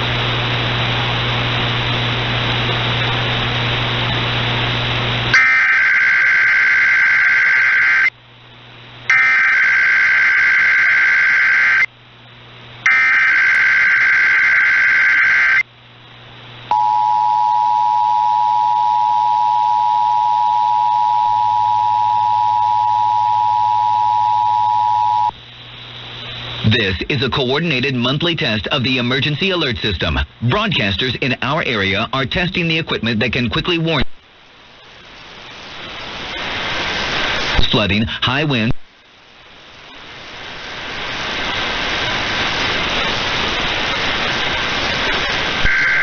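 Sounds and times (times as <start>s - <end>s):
static hiss: 0.0s - 16.7s, 25.2s - 46.0s
harsh data bursts: 5.3s - 8.1s, 9.1s - 11.9s, 12.8s - 15.6s, 45.7s - 46.0s
two-tone attention signal: 45.7s - 46.0s.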